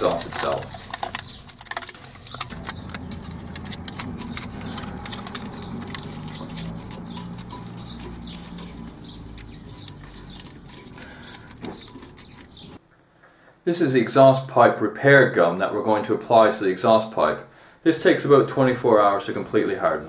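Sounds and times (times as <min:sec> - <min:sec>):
aluminium foil crinkling: 0:00.0 - 0:12.8.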